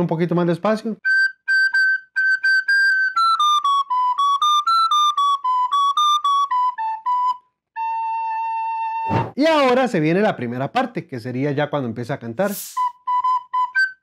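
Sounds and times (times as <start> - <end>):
recorder melody: 1.0 - 9.4, 12.7 - 14.0.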